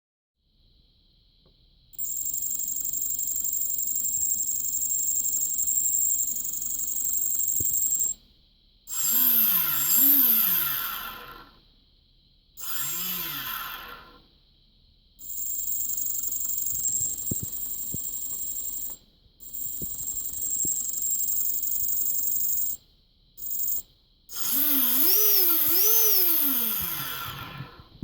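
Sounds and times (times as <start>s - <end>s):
small electric motor whining: 8.9s - 11.6s, 12.6s - 14.2s, 15.2s - 22.8s, 23.4s - 28.0s.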